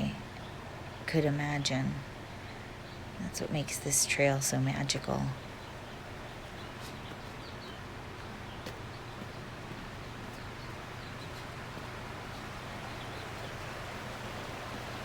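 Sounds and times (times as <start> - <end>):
faint bird chirps: 4.8 - 14.2
flowing creek rushing: 5.3 - 15.0.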